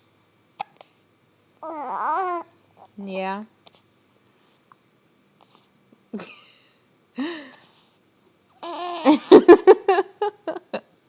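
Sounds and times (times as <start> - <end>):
person laughing: 9.1 - 10.8.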